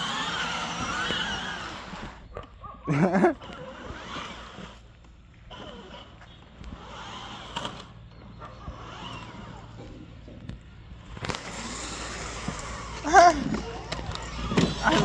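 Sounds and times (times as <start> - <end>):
toy car motor running: 0.0 - 15.0.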